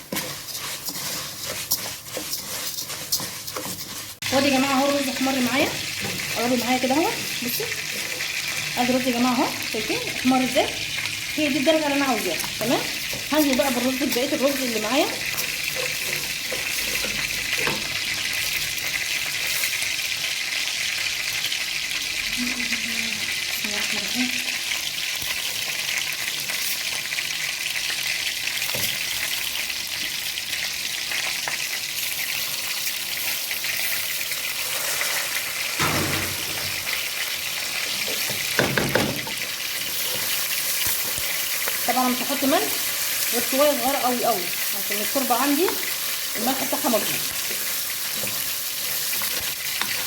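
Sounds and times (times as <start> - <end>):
rice sizzling in hot oil: 0.0 - 50.0.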